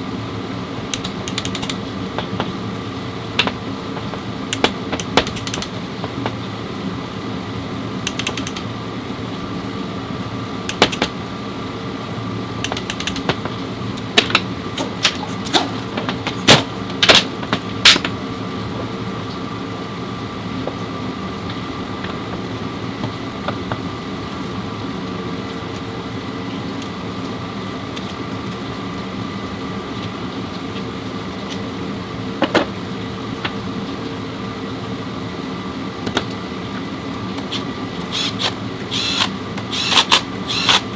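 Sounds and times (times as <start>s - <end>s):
steady mechanical hum: 0.0s - 40.9s
sharp clicks and knocks: 3.4s - 6.4s, 12.6s - 18.1s.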